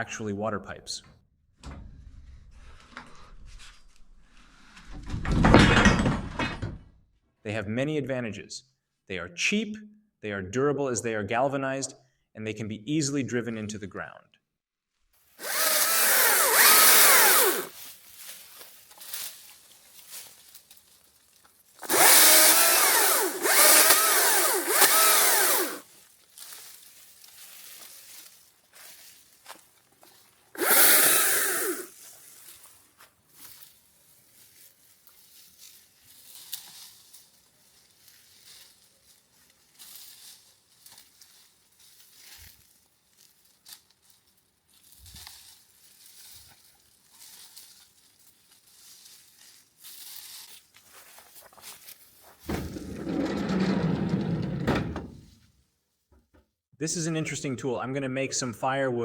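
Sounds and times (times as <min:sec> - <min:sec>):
power tool motor whining: 0:15.4 - 0:17.7, 0:21.8 - 0:25.8, 0:30.6 - 0:32.0, 0:52.5 - 0:55.3.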